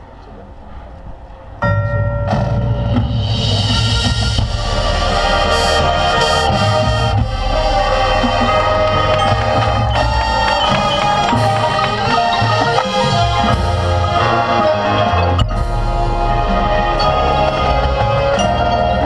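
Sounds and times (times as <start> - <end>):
percussion strokes: 1.6 - 19.0
marching band playing: 2.3 - 19.0.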